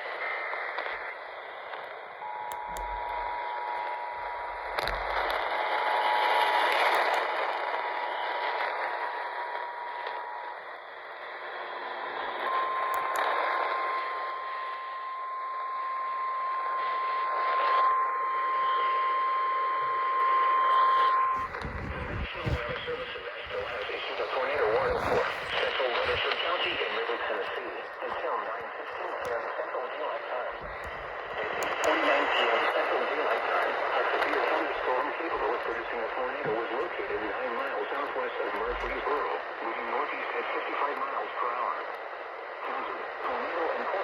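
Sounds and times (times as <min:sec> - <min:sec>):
radio static: 0:00.0 - 0:44.0
steady warning alarm tone: 0:02.2 - 0:26.5.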